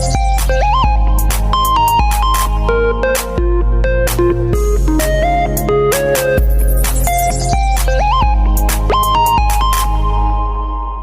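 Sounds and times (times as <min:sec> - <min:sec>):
synth ringtone melody: 0:01.6 - 0:10.3.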